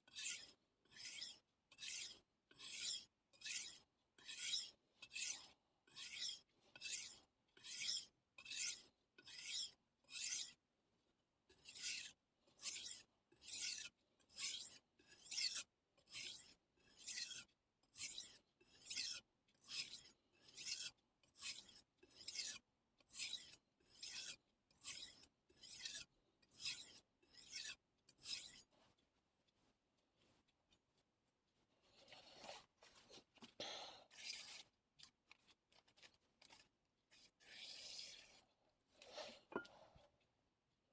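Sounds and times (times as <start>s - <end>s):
knife scraping on whetstone: 0.1s - 10.5s, 12.7s - 22.6s, 23.2s - 28.7s, 34.1s - 39.9s.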